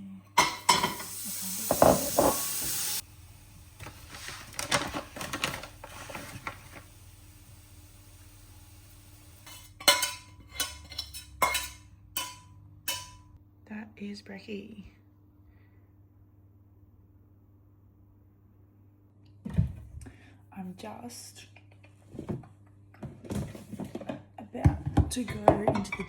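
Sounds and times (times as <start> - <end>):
greens sizzling in frying pan: 0.4 - 10.2
utensil clinking and scraping: 9.4 - 13.2.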